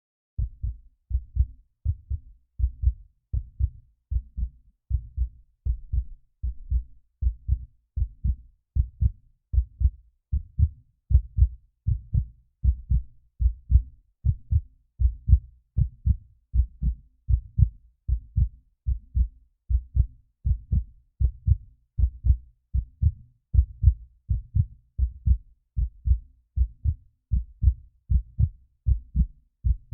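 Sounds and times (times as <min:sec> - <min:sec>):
heartbeat thumps: 0:00.4 - 0:29.9.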